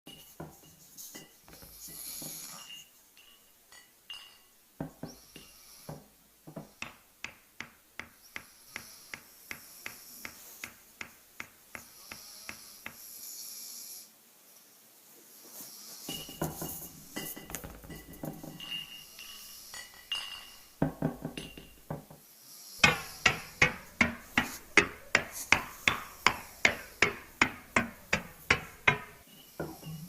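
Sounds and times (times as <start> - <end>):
breathy hissing: 1.5 - 2.9, 5.0 - 7.2, 8.1 - 10.8, 11.7 - 14.2, 18.2 - 30.0
sharp knocks: 20.8 - 22.2, 22.8 - 29.8.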